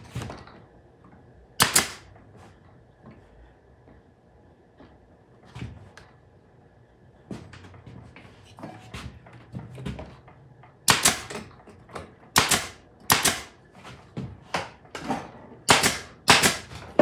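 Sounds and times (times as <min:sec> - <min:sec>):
loud sharp knocks: 0:01.6 - 0:02.0, 0:10.9 - 0:11.4, 0:12.4 - 0:13.5, 0:15.7 - 0:16.8.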